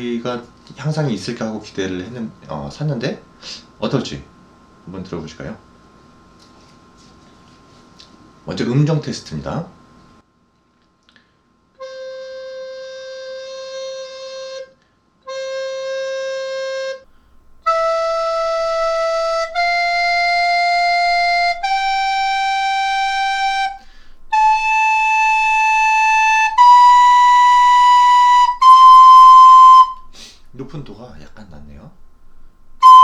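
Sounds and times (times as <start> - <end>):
recorder playing held notes: 17.2 - 30.2, 32.2 - 33.0.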